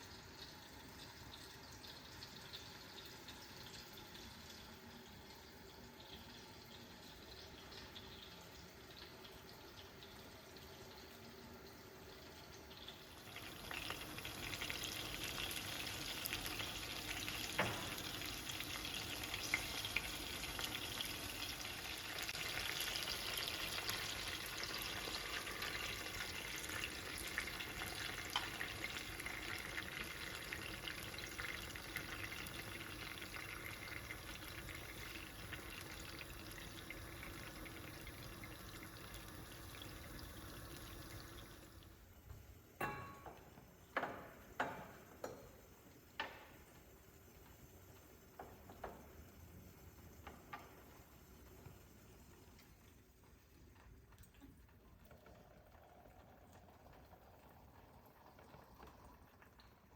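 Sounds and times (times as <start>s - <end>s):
food sizzling in a frying pan: 5.5s - 41.8s.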